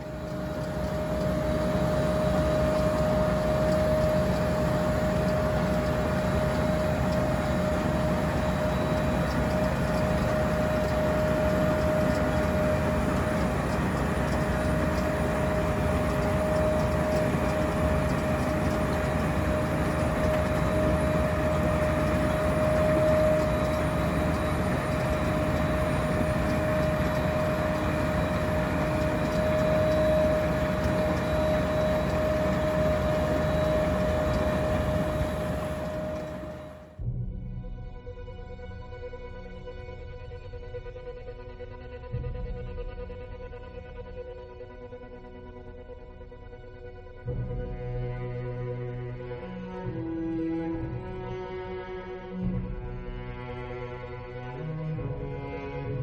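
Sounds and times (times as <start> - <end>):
low engine rumble: 0.0 - 37.0
high machinery whine: 0.0 - 37.2.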